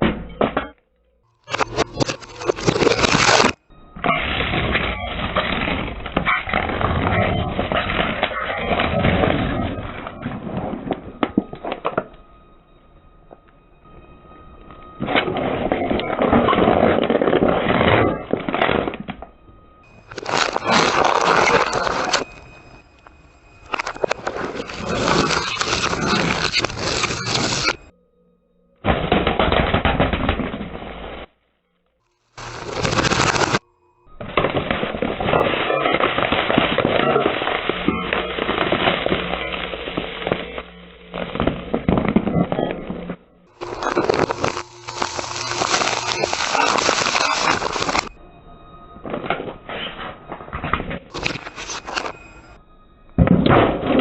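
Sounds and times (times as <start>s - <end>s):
objects crunching when crushed: 1.4s - 10.5s, 19.9s - 27.8s, 32.4s - 33.6s, 34.2s - 48.2s, 49.4s - 52.6s
brittle ornaments crunching: 1.5s - 3.6s, 20.0s - 22.5s, 32.4s - 33.6s, 43.6s - 48.1s.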